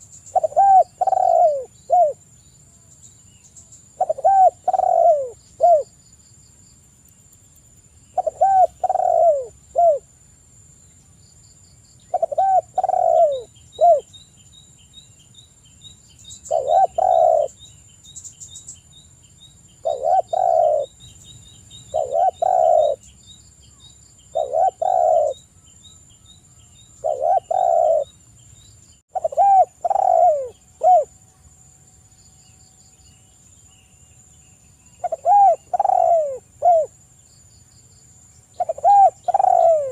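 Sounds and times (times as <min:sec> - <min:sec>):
dove cooing: 0:00.3 - 0:02.2, 0:04.0 - 0:05.9, 0:08.2 - 0:10.0, 0:12.1 - 0:14.1, 0:16.5 - 0:17.6, 0:19.8 - 0:21.0, 0:21.9 - 0:23.0, 0:24.3 - 0:25.4, 0:27.0 - 0:28.1, 0:29.1 - 0:31.2, 0:35.0 - 0:37.0, 0:38.6 - 0:39.9.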